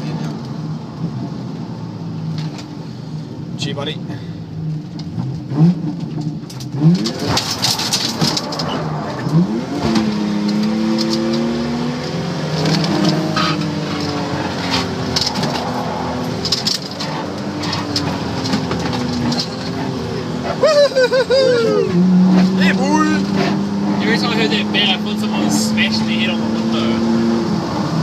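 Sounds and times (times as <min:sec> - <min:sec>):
car engine revving hard: 0:06.6 - 0:20.6, 0:21.5 - 0:28.0.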